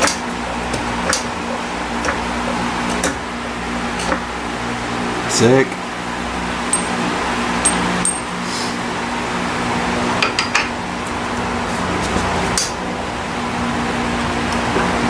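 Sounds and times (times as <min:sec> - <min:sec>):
steady mechanical hum: 0:00.0 - 0:15.0
tools clinking on metal parts: 0:06.7 - 0:07.0, 0:07.6 - 0:08.4.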